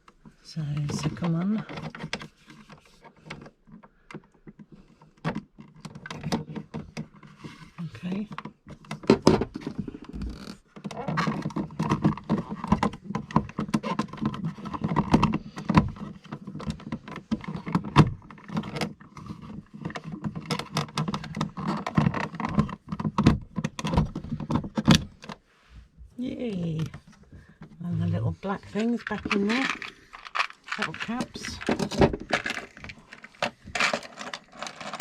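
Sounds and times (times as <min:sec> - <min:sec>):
small plastic clicks and rattles: 0:28.8 - 0:35.0.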